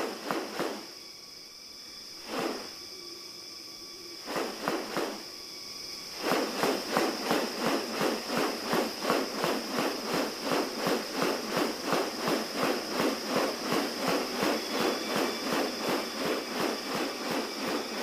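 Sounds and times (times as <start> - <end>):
short sweeping sounds: 0.0 - 0.9, 2.2 - 2.8, 4.2 - 5.2, 6.1 - 18.0
insects droning high-pitched: 0.0 - 18.0.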